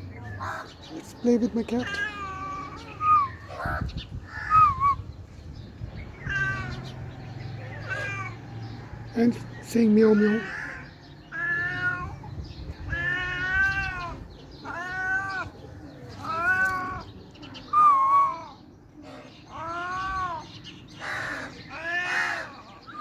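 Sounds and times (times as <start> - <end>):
cat meowing: 1.6 - 4.7, 6.1 - 8.5, 10.2 - 15.6, 16.2 - 17.1, 19.5 - 20.6.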